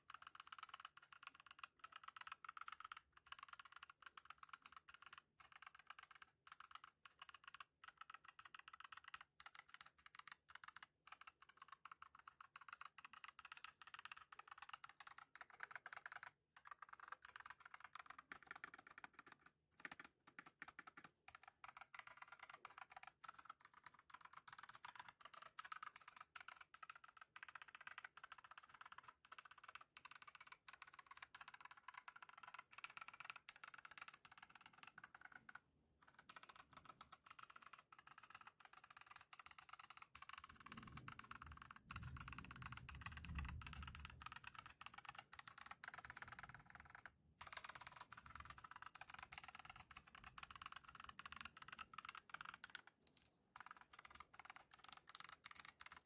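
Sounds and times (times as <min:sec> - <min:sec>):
mechanical keyboard typing: 0:00.0 - 0:56.0.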